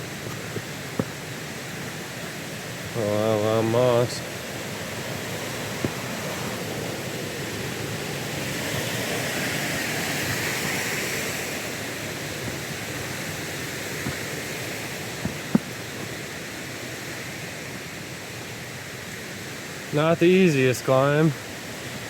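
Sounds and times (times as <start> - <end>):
waterfall rushing: 0.0 - 22.0
short knocks: 0.2 - 1.3, 14.0 - 14.4, 15.2 - 15.8.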